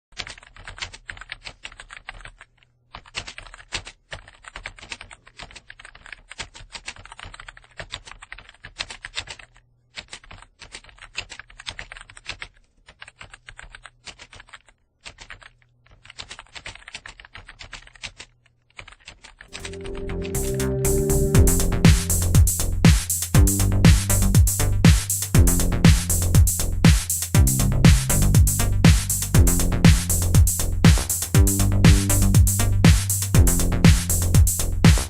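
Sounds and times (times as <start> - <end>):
keyboard typing: 18.8 - 35.0.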